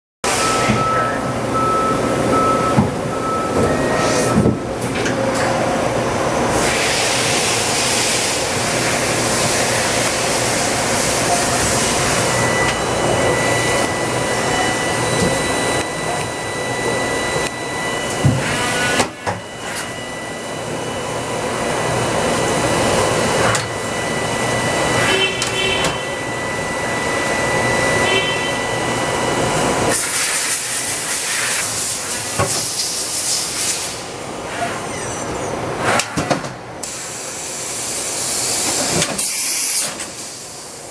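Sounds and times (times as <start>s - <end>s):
thin high whine: 0.2s - 36.0s
machine mechanical hiss: 6.4s - 16.0s, 29.9s - 40.9s.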